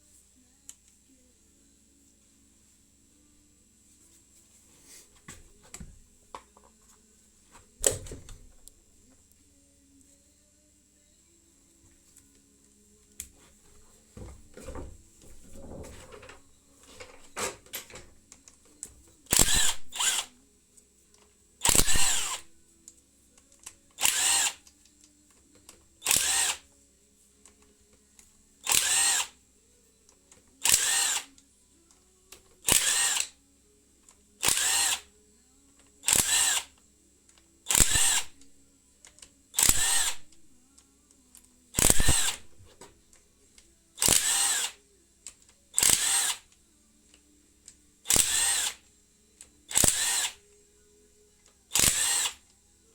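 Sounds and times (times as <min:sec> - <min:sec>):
power drill whirring: 0:19.3 - 0:20.4, 0:21.6 - 0:22.5, 0:24.0 - 0:24.7, 0:26.0 - 0:26.6, 0:28.6 - 0:29.4, 0:30.6 - 0:31.4, 0:32.6 - 0:33.4, 0:34.4 - 0:35.1, 0:36.0 - 0:36.7, 0:37.6 - 0:38.5, 0:39.5 - 0:40.4, 0:41.8 - 0:42.6, 0:44.0 - 0:44.8, 0:45.7 - 0:46.5, 0:48.1 - 0:48.8, 0:49.7 - 0:50.5, 0:51.7 - 0:52.4.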